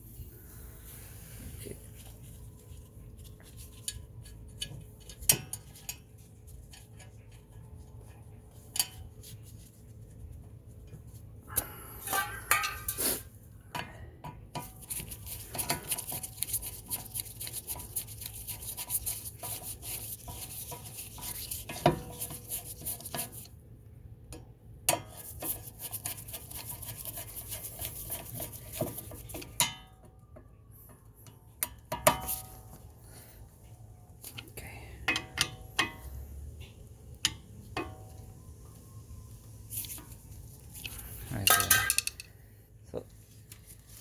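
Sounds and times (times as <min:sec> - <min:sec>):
metal tools clinking and scraping: 0:11.9 - 0:13.2, 0:40.8 - 0:42.4.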